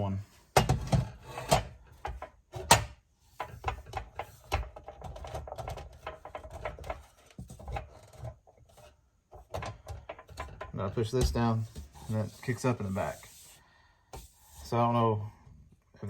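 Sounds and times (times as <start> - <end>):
sheet metal clicks and knocks: 0.6 - 8.3, 9.4 - 11.4.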